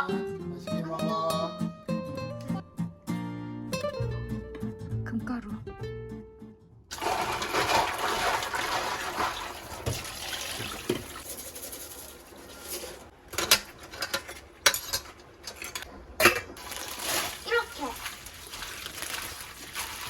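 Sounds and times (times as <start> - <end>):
water running: 6.9 - 20.0
dishes and utensils clinking: 10.9 - 16.8.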